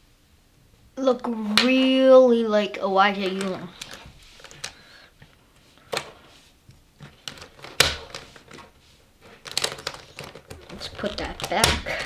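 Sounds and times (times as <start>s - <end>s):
plastic puzzle cube clicking: 7.0s - 8.7s, 9.3s - 12.0s.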